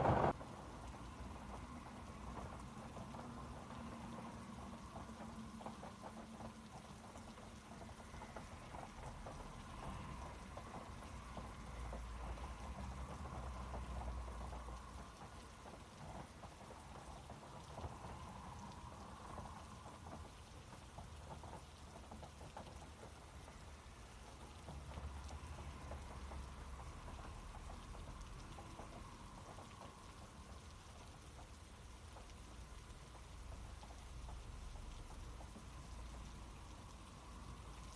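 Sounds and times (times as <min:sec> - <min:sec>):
low rumble: 0:00.0 - 0:00.3
rain pattering: 0:00.0 - 0:37.9.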